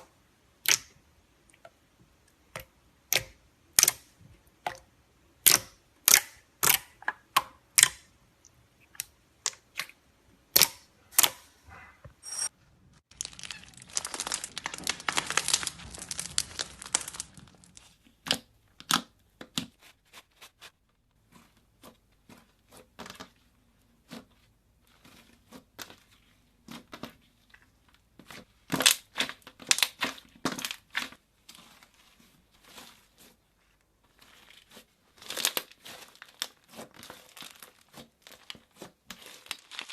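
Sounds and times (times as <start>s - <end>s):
slime crackling: 13.0s - 18.0s, 34.1s - 39.9s.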